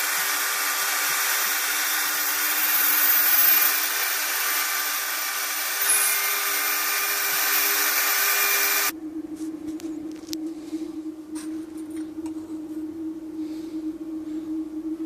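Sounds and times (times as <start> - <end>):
router cutting metal hiss: 0.0 - 8.9
spindle whine: 0.0 - 15.0.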